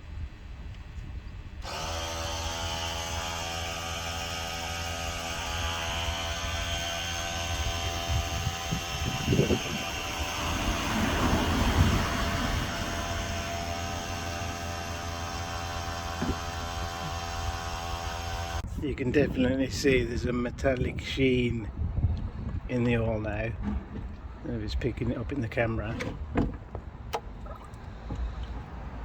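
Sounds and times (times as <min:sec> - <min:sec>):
motor running with low hum: 0:01.2 - 0:18.7.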